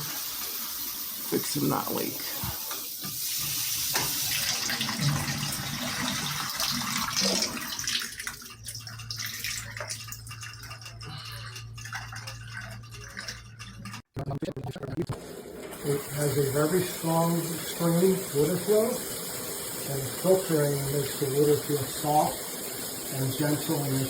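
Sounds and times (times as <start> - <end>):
shower head spraying water: 0.0 - 7.9, 15.2 - 24.0.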